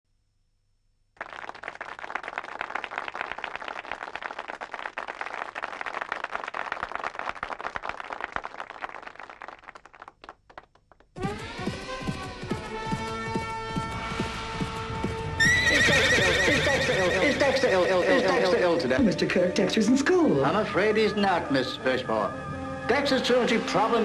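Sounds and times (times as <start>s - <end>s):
audience applauding: 1.2s - 13.2s.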